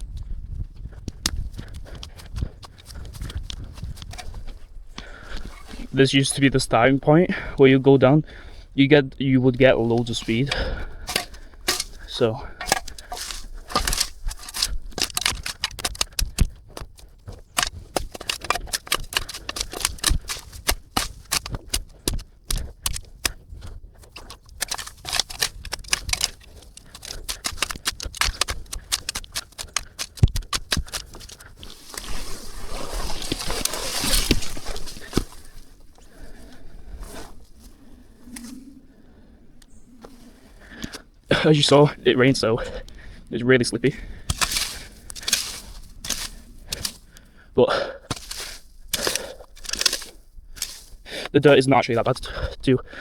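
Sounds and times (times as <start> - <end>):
footsteps crunching through vegetation: 0.0 - 7.0, 8.8 - 38.7, 43.8 - 47.1, 48.1 - 51.9
vegetation rustling: 7.8 - 42.3, 43.4 - 52.2.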